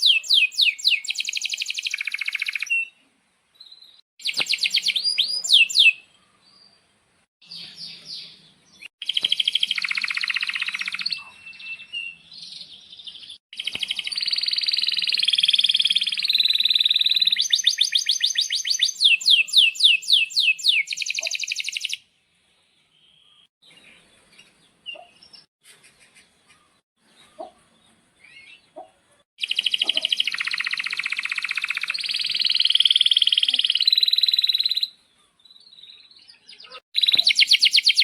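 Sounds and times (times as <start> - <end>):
canary singing trills: 0.0 - 3.0, 3.7 - 6.7, 7.4 - 22.0, 28.2 - 38.0
faint bird chirps: 7.5 - 22.0.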